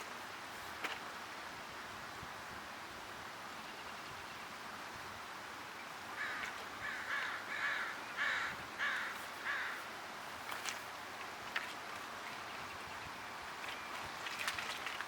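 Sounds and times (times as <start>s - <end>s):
steady background hiss: 0.0s - 15.0s
crow cawing: 6.2s - 9.8s.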